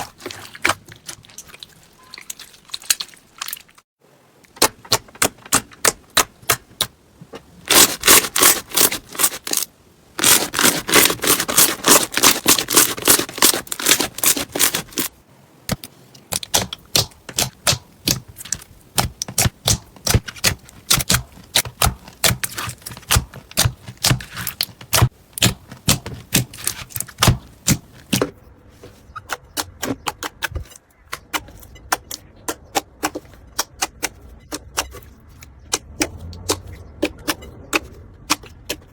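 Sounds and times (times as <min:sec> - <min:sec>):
slime clicking and popping: 0:16.3 - 0:27.8.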